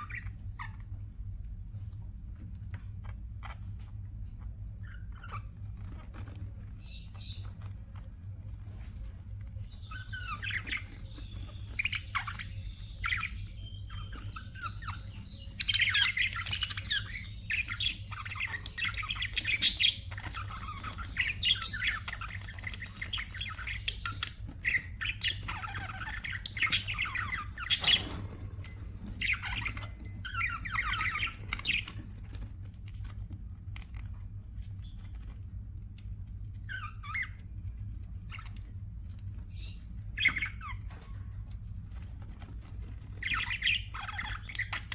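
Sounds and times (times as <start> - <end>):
steady low hum: 0.0 - 44.9
budgerigars chattering: 9.6 - 32.0, 43.2 - 44.9.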